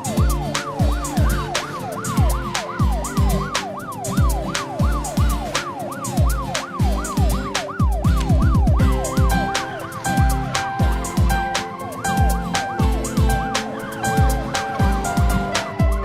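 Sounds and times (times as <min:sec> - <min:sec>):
heavy kick drum: 0:00.0 - 0:01.6, 0:02.2 - 0:03.6, 0:04.2 - 0:05.6, 0:06.2 - 0:09.6, 0:10.2 - 0:11.5, 0:12.2 - 0:13.5, 0:14.2 - 0:16.0
siren-like synth wail: 0:00.0 - 0:16.0
ticking hi-hats: 0:00.0 - 0:16.0.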